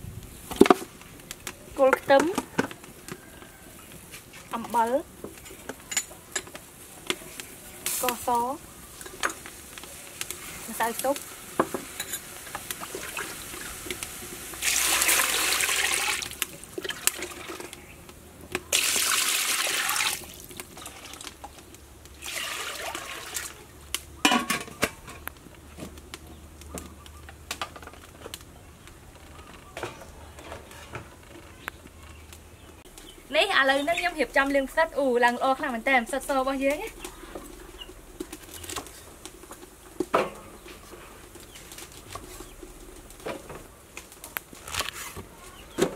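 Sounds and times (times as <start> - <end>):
running water: 22.2 - 23.7.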